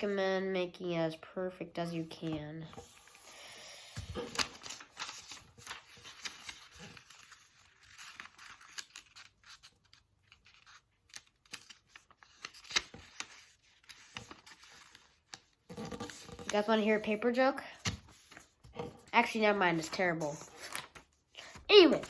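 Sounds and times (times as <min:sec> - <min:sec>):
paper rustling and crinkling: 0:01.9 - 0:03.2, 0:04.0 - 0:22.0.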